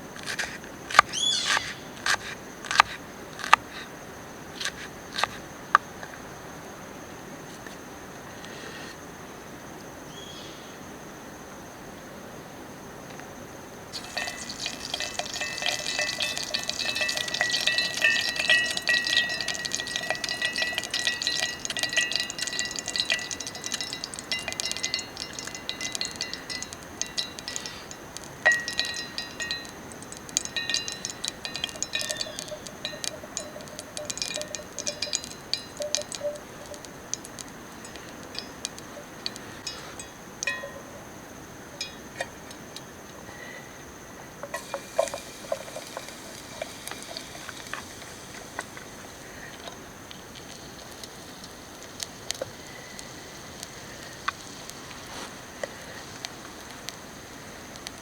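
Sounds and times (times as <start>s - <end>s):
food sizzling in a pan: 14.0s - 41.0s, 44.5s - 58.0s.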